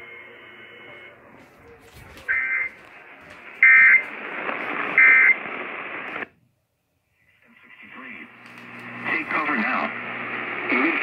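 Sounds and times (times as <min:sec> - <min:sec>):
radio static hiss: 0:02.1 - 0:06.4, 0:07.2 - 0:11.0.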